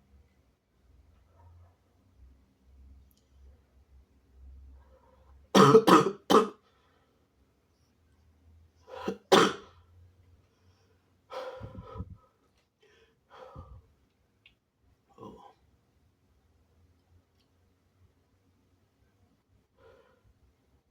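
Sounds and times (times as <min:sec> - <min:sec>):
person coughing: 0:05.6 - 0:06.6, 0:09.0 - 0:09.7.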